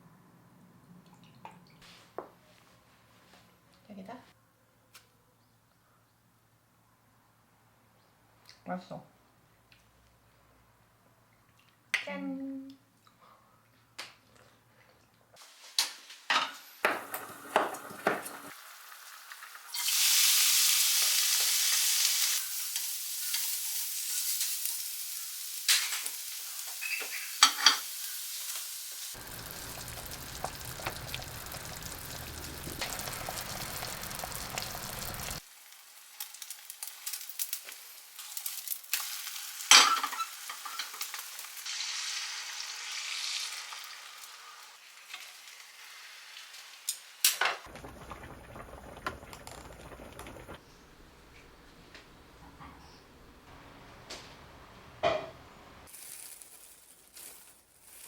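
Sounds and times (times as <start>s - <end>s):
food sizzling in a pan: 15.4s - 50.6s.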